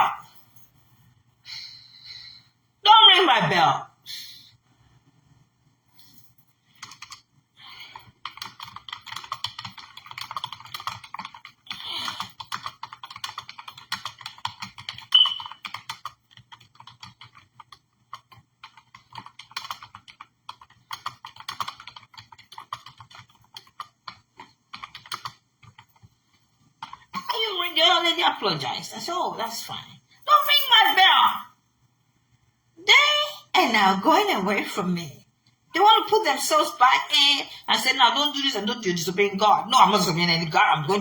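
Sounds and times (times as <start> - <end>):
short high beep: 15.2 - 15.6.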